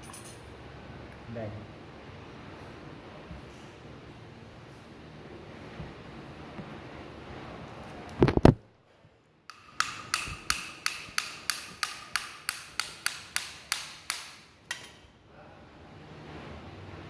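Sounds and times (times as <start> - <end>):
hammer knocking on metal: 9.5 - 14.4
ringing metallic hammer taps: 9.5 - 14.8.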